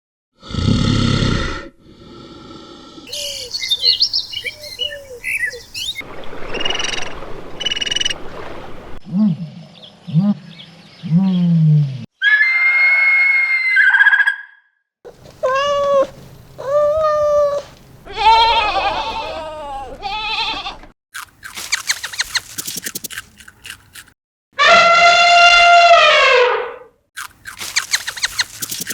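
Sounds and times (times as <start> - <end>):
repeated pitched animal calls: 11.1 - 20.8
high animal chirps: 21.4 - 23.4, 27.4 - 28.9
fast run of clicks: 21.7 - 24.1, 27.6 - 28.9.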